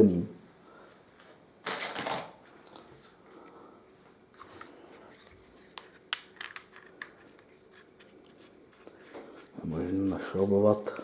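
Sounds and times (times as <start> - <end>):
small hard objects clicking: 9.3 - 11.0.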